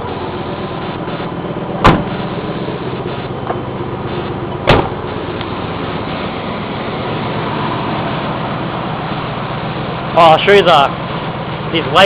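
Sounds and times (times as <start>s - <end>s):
car engine idling: 0.0s - 12.0s
sharp bang: 1.8s - 5.2s.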